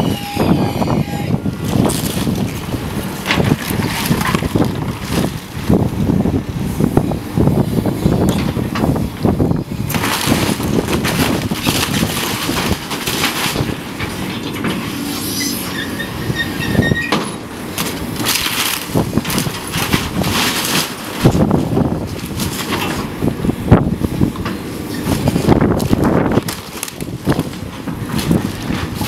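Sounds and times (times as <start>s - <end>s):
heavy machinery rumbling: 0.0s - 29.0s
debris crunching and clattering: 1.6s - 5.9s, 8.2s - 15.0s, 17.1s - 23.4s, 24.2s - 29.0s.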